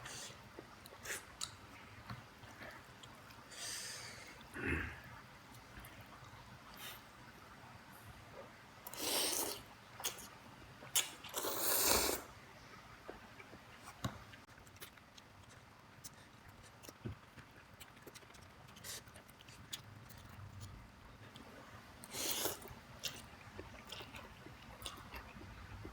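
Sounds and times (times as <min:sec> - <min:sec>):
quiet chewing: 0:00.0 - 0:04.5, 0:13.0 - 0:25.9
sucking noodle soup: 0:08.8 - 0:10.3, 0:10.9 - 0:12.3, 0:22.0 - 0:25.9.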